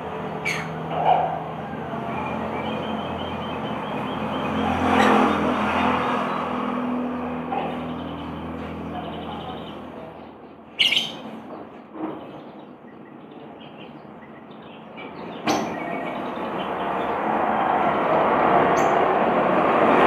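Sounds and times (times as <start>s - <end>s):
lovebird shrill squawks: 0.4s - 0.9s, 10.8s - 11.2s.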